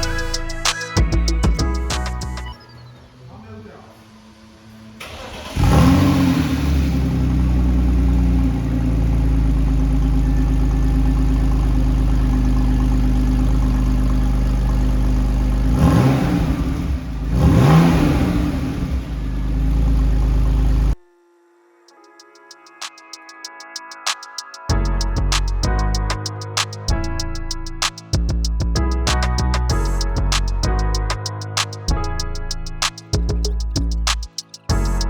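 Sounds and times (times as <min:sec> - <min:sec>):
car engine revving: 0:02.9 - 0:21.0
car engine idling: 0:03.4 - 0:21.0.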